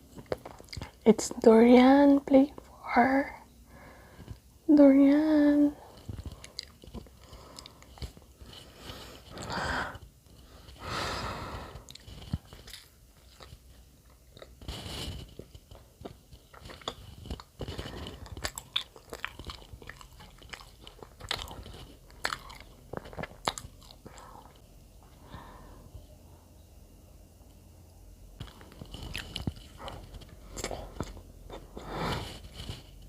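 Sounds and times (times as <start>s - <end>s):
person chewing bread: 0.0s - 1.0s, 5.8s - 24.7s, 28.4s - 33.0s.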